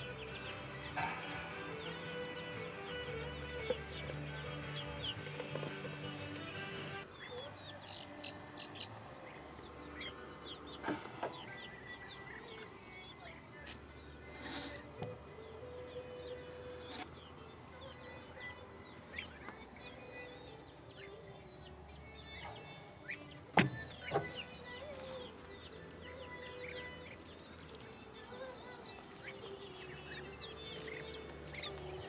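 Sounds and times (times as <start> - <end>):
chickens and chicks cheeping: 0.0 - 32.0.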